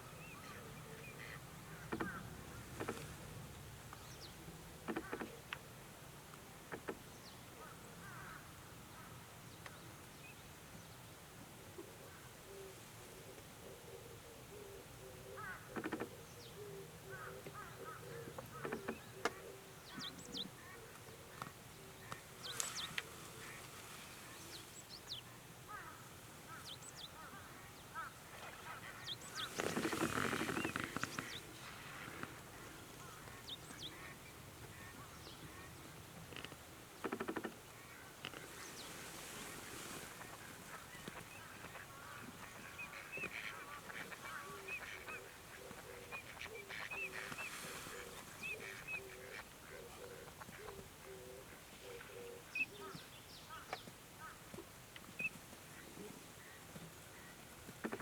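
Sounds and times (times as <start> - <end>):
waterbirds honking and squawking: 25.7 - 50.8.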